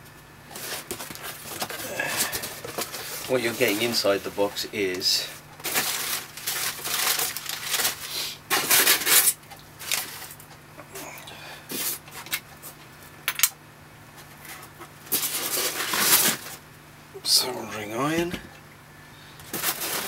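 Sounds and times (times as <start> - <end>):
packaging rustling: 0.5 - 4.4, 5.0 - 10.4, 15.1 - 16.6, 19.4 - 20.0.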